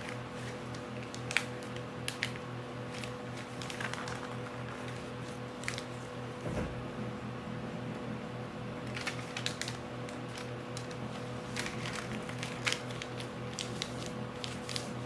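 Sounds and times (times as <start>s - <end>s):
paper folding and creasing: 2.1s - 5.9s, 8.9s - 15.0s.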